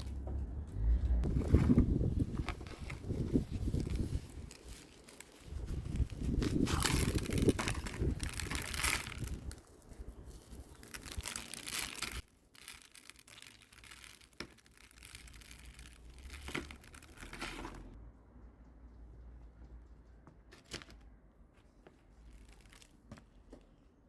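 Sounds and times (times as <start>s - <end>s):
plants crinkling and rustling: 0.0s - 18.0s, 21.9s - 23.8s.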